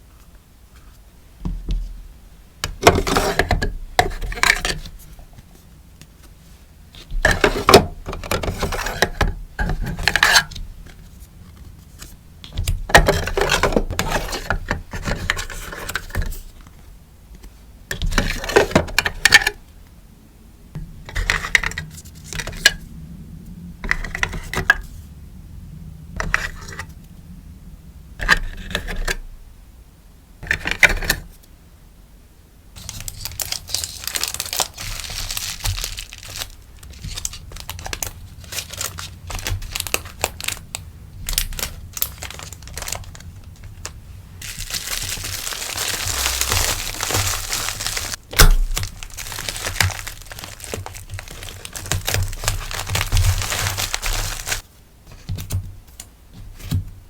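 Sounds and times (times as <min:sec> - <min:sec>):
plastic packaging rustling: 0:07.0 - 0:16.8, 0:32.8 - 0:56.9
plastic packaging crinkling: 0:32.8 - 0:54.7.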